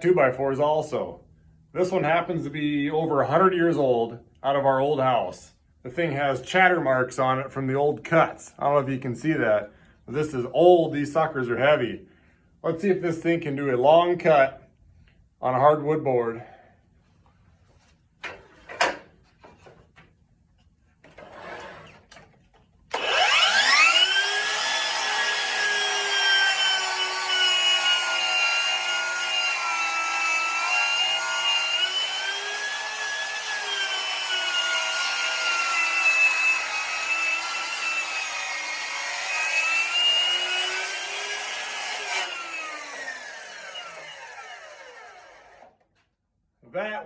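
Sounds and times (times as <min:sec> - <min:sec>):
miter saw cutting wood: 0:22.9 - 0:45.8.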